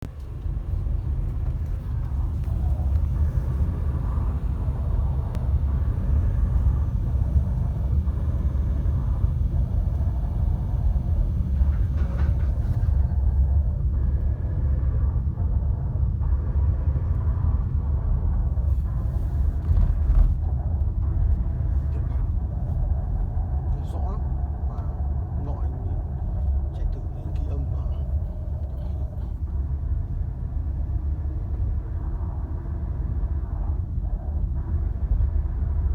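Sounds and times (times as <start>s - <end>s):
vehicle low rumble: 0.0s - 35.9s.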